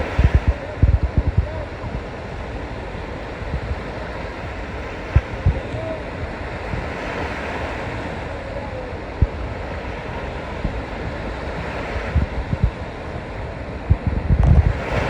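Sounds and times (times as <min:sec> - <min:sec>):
short low thumps: 0:00.0 - 0:02.0, 0:13.9 - 0:14.8
sea water rushing: 0:00.0 - 0:15.0
wind noise on microphone: 0:00.0 - 0:15.0.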